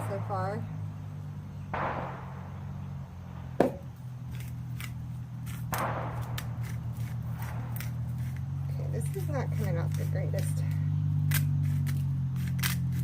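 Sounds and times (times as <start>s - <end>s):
distant gunshot echoing: 1.7s - 4.0s, 5.7s - 8.4s
sharp knock: 3.6s - 3.9s
salt grinder crunching clicks: 4.3s - 13.0s.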